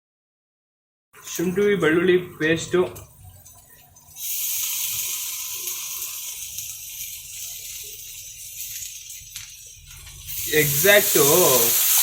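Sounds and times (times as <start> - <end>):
paste sizzling in hot oil: 3.6 - 12.0.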